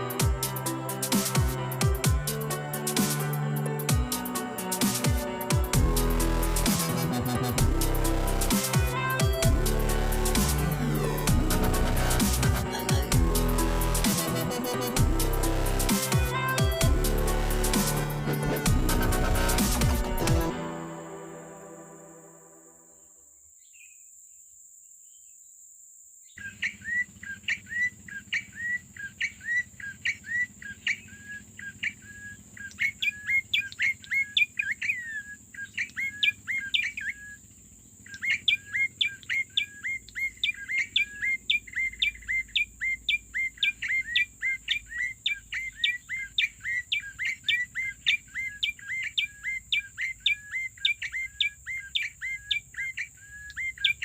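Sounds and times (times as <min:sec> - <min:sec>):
small bird chirping: 0:26.2 - 0:54.0.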